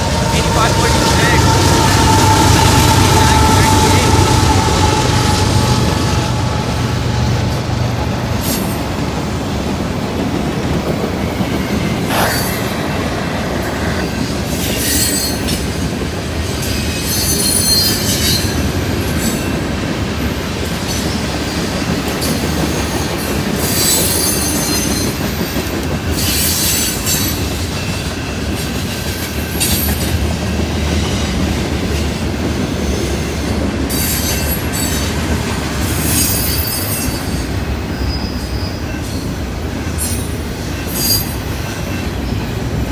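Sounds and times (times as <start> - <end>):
high-pitched wheel squeal: 0.0 - 7.6
freight train rumbling past: 0.0 - 42.9.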